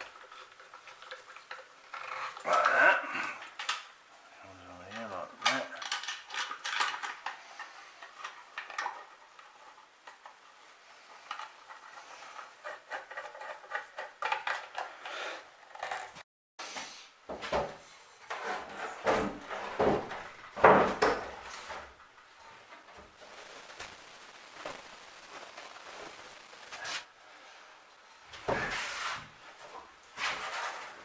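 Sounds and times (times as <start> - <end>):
light clicks and rustles of parts: 0.0 - 2.5, 3.3 - 4.0, 4.8 - 16.2.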